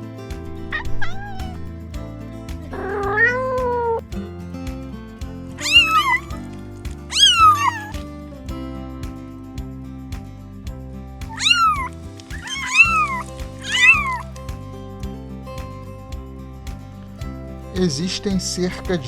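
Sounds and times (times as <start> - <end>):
background music: 0.0 - 19.0.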